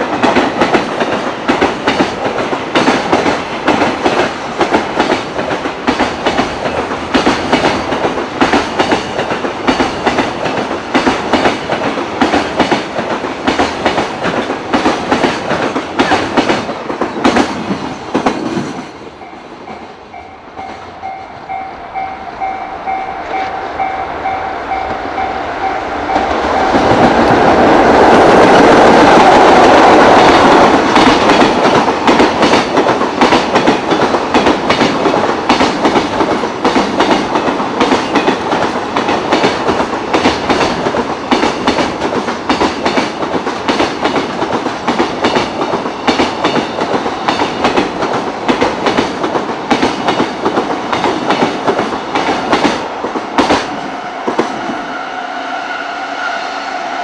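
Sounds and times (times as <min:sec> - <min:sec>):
train wheels clacking over rail joints: 0:00.0 - 0:19.0, 0:24.8 - 0:54.8
train approaching: 0:00.0 - 0:57.0
steady tone: 0:19.2 - 0:27.2.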